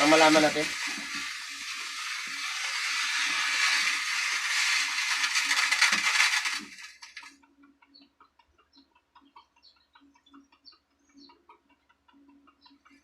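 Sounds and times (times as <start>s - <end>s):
amplifier speaker hissing static: 0.0s - 7.2s.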